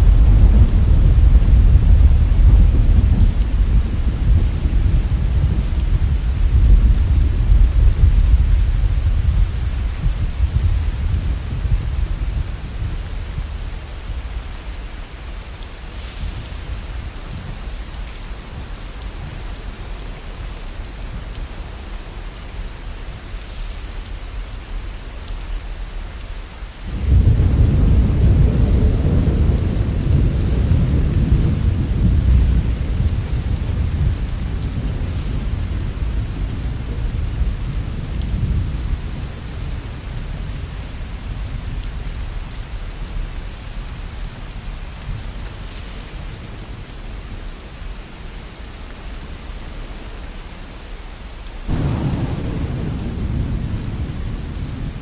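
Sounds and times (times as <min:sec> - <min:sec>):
loud thunderclap: 0:00.0 - 0:12.1, 0:26.9 - 0:35.6, 0:51.7 - 0:55.0
thunder rumbling: 0:00.0 - 0:14.5, 0:26.9 - 0:42.3, 0:51.7 - 0:55.0
heavy rain: 0:00.0 - 0:55.0.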